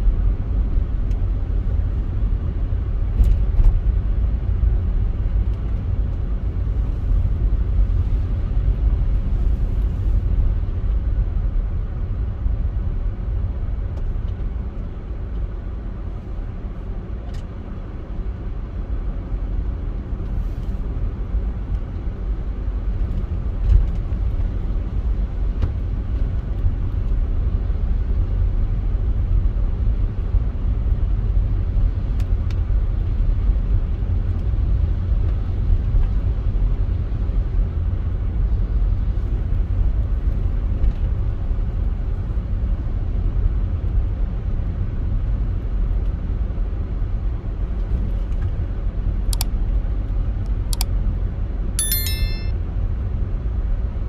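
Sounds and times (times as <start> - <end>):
low outdoor rumble: 0.0 - 45.6.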